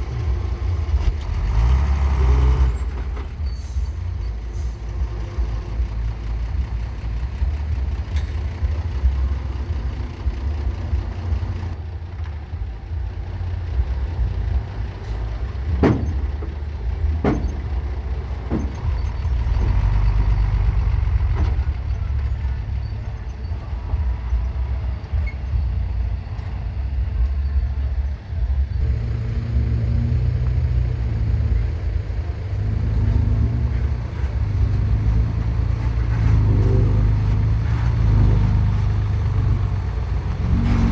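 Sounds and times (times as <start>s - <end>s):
heavy machinery engine rumble: 0.0s - 40.9s.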